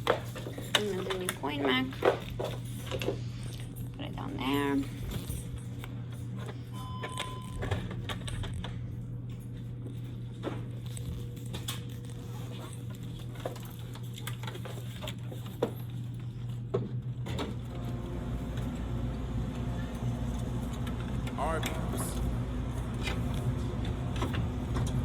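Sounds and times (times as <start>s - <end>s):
steady low hum: 15.4s - 25.0s.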